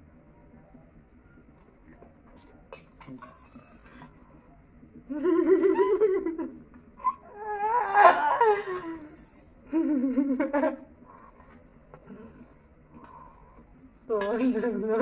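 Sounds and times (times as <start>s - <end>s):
person laughing: 5.1s - 6.6s, 9.7s - 10.9s.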